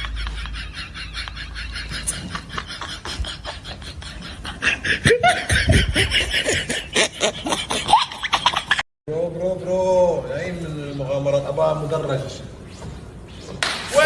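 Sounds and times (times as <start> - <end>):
laughter in quick pulses: 0.0 - 8.8.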